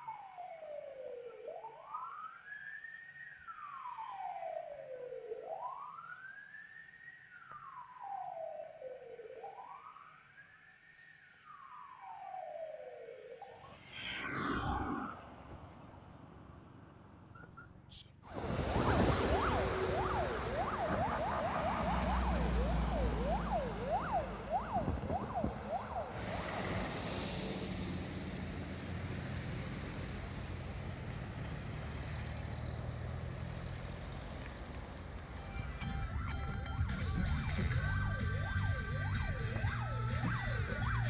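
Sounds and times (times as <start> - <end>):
emergency siren yelping: 0.0 - 15.3, 18.3 - 41.0
traffic noise: 13.6 - 41.0
vehicle engine rumble: 14.8 - 41.0.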